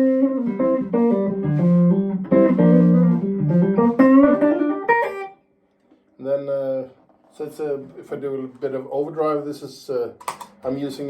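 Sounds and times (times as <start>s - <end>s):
clean electric guitar playing: 0.0s - 5.4s.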